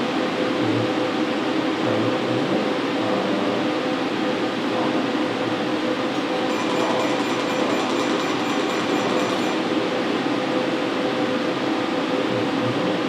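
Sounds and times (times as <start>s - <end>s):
laser unit humming: 6.1s - 10.3s
thin high tone: 6.2s - 9.8s.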